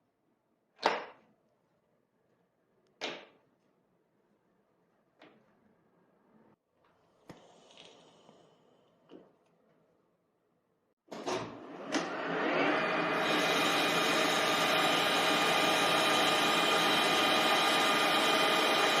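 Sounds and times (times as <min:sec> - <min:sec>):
lathe motor spinning up and humming: 0:11.2 - 0:19.0.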